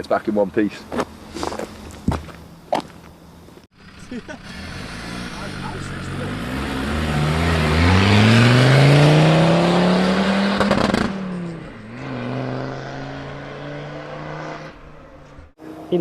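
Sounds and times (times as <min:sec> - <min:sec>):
diesel engine accelerating: 0:03.7 - 0:15.9.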